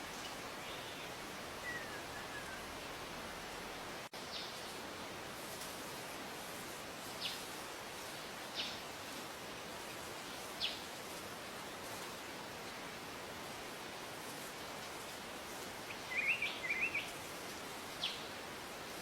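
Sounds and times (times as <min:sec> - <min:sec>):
steady background hiss: 0:00.0 - 0:19.0
bird giving high falling calls: 0:00.6 - 0:02.7, 0:15.9 - 0:17.1.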